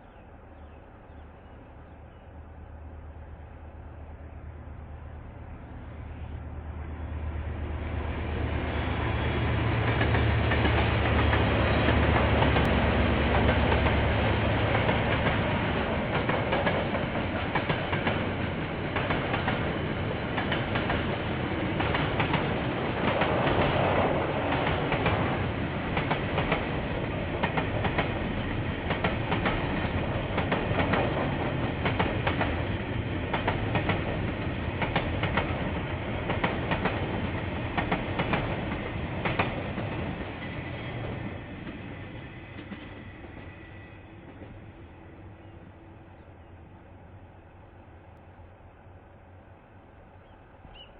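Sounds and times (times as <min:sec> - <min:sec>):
train rumble: 0:00.0 - 0:50.9
train wheels clacking over rail joints: 0:13.3 - 0:41.8.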